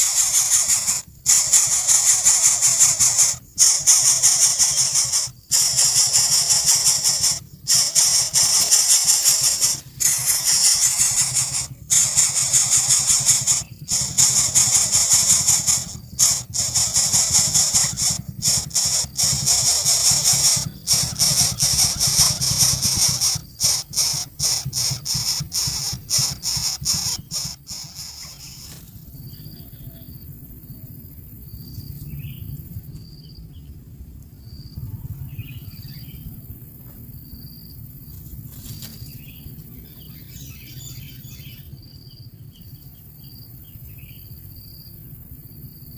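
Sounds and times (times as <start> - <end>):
nestlings begging calls: 0.0 - 28.9
quiet high peeps: 0.0 - 30.2.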